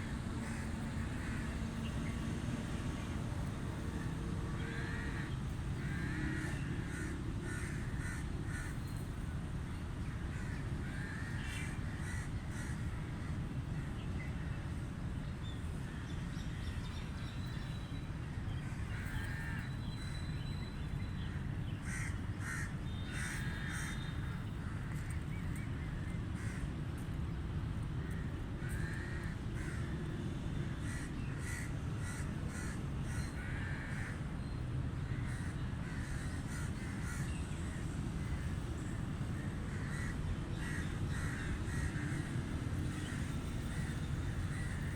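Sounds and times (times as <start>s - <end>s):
crows cawing: 0.4s - 1.8s, 4.6s - 8.8s, 10.3s - 13.9s, 18.7s - 19.7s, 21.8s - 25.1s, 26.4s - 26.6s, 28.0s - 29.9s, 30.8s - 34.2s, 35.1s - 38.4s, 39.3s - 44.9s.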